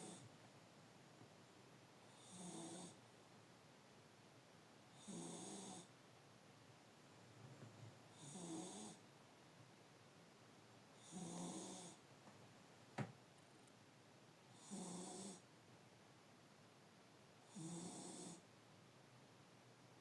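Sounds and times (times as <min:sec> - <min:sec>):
pet snoring: 0:00.0 - 0:00.3, 0:02.1 - 0:03.0, 0:04.9 - 0:05.9, 0:08.1 - 0:09.0, 0:11.0 - 0:12.0, 0:14.5 - 0:15.5, 0:17.4 - 0:18.4.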